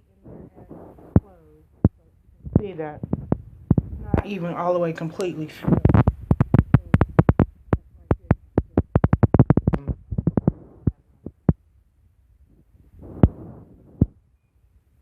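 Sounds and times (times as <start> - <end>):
sharp clicks and taps: 0.3 - 4.4, 5.1 - 11.6.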